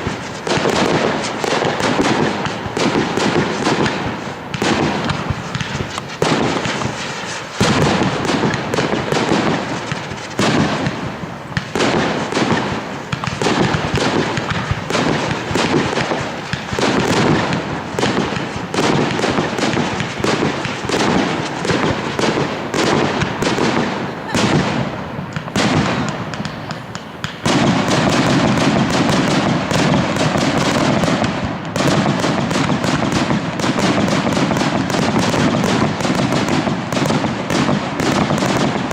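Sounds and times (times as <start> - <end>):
fireworks bangs and crackles: 0.0 - 38.9.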